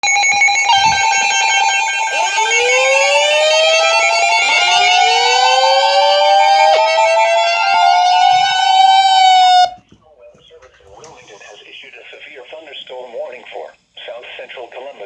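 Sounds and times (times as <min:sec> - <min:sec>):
siren wail: 0:00.0 - 0:09.8.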